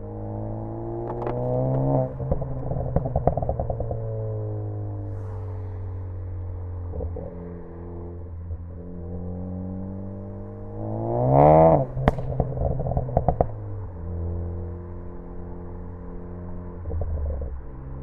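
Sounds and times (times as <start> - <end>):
exhaust pops and crackles: 1.0 - 4.3, 11.8 - 13.8.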